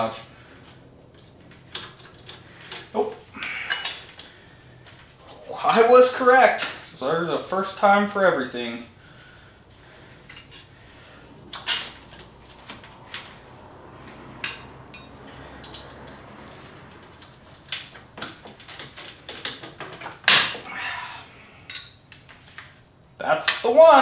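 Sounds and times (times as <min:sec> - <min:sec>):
metal tools clinking: 0:01.1 - 0:04.2, 0:10.3 - 0:10.8, 0:14.1 - 0:20.5, 0:21.6 - 0:22.7.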